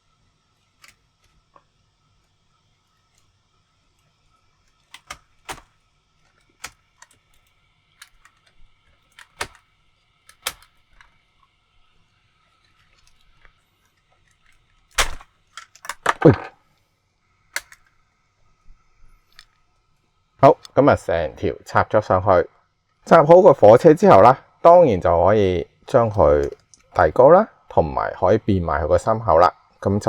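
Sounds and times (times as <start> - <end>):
plastic toy parts clicking: 0.6 - 1.4, 4.6 - 11.3, 12.6 - 16.6, 17.5 - 17.9, 25.9 - 27.1.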